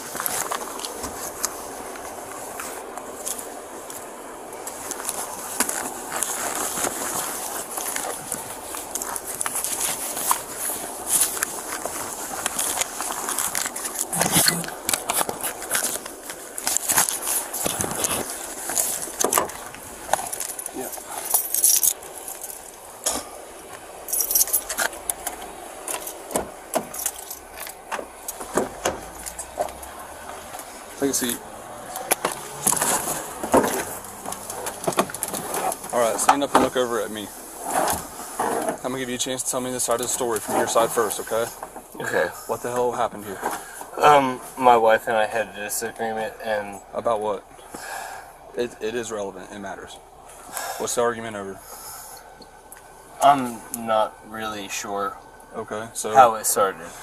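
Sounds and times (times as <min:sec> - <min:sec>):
clothes rustling: 0:00.0 - 0:42.0
small metal objects jingling: 0:20.3 - 0:22.8, 0:24.1 - 0:24.9, 0:26.9 - 0:28.4.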